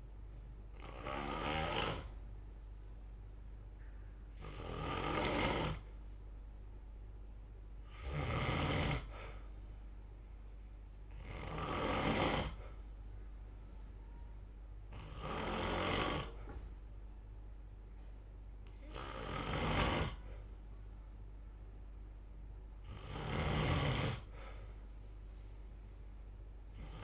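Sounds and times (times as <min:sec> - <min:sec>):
person snoring: 0:00.8 - 0:02.2, 0:04.3 - 0:05.9, 0:07.9 - 0:09.4, 0:11.1 - 0:12.8, 0:14.9 - 0:16.4, 0:18.7 - 0:20.4, 0:22.8 - 0:24.5, 0:26.7 - 0:27.0.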